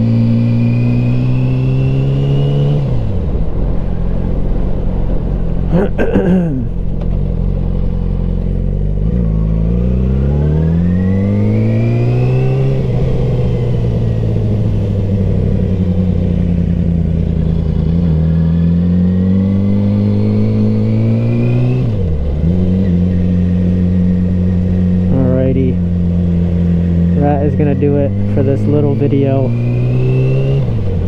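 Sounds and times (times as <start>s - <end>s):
low wind rumble: 0.0s - 31.0s
motorcycle engine pulling: 6.2s - 9.5s.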